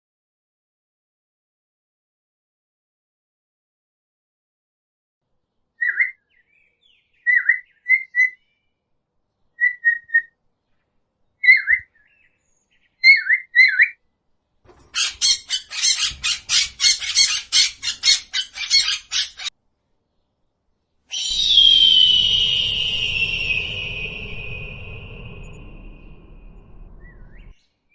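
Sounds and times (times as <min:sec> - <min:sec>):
downward-slurred bird chirps: 0:05.8 - 0:08.6, 0:09.4 - 0:10.3, 0:11.4 - 0:14.0, 0:14.7 - 0:19.5, 0:21.1 - 0:27.8
harsh rapid bird chattering: 0:14.8 - 0:19.5.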